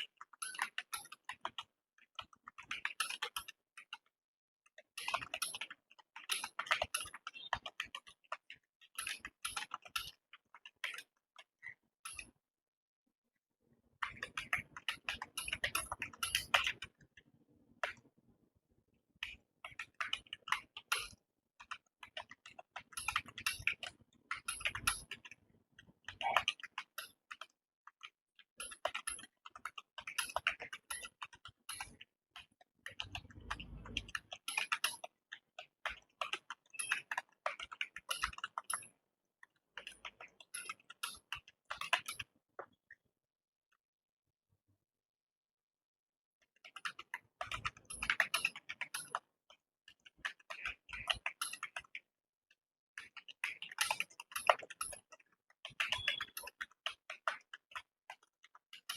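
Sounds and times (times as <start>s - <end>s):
fast typing on keyboard: 14.1s - 17.0s, 19.3s - 39.0s, 46.6s - 52.0s, 53.0s - 58.9s.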